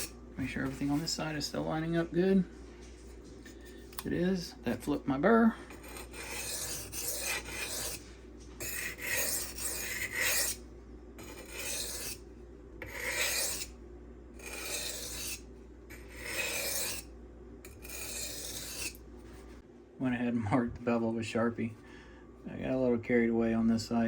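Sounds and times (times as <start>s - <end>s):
knife rasping on sharpening stone: 5.7s - 8.0s, 8.6s - 10.6s, 11.2s - 12.2s, 12.8s - 13.7s, 14.4s - 17.1s, 17.7s - 19.0s.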